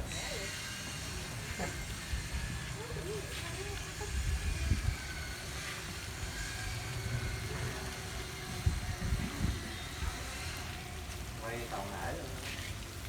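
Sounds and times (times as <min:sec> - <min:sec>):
fountain water spraying: 0:00.0 - 0:13.0.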